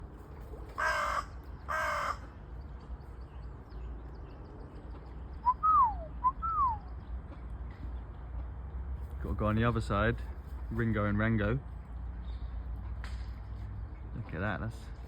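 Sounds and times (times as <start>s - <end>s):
crow cawing: 0.8s - 2.4s.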